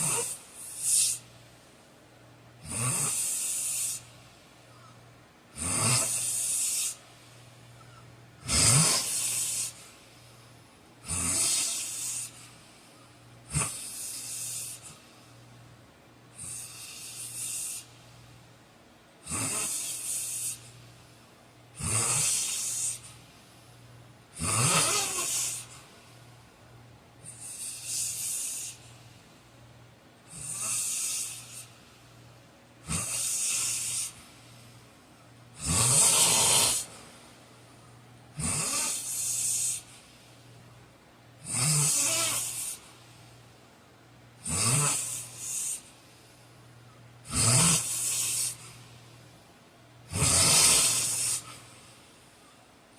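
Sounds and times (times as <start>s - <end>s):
man snoring: 0.0s - 1.2s, 2.6s - 4.1s, 5.5s - 7.0s, 8.4s - 9.8s, 11.0s - 12.5s, 13.4s - 15.0s, 16.4s - 17.9s, 19.2s - 20.7s, 21.8s - 23.2s, 24.3s - 25.8s, 27.2s - 28.8s, 30.3s - 31.7s, 32.8s - 34.2s, 35.6s - 37.0s, 38.4s - 39.9s, 41.4s - 42.9s, 44.4s - 45.9s, 47.2s - 48.6s, 50.1s - 51.6s.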